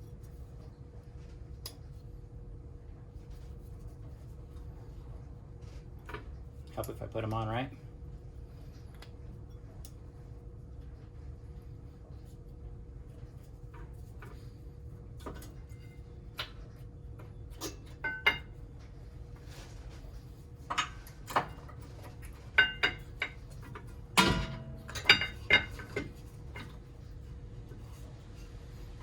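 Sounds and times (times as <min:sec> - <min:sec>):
heavy metallic clunk: 0:24.2 - 0:24.8.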